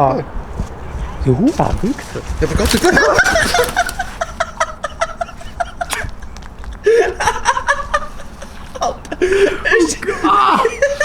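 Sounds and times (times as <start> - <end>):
person laughing: 2.7 - 11.0.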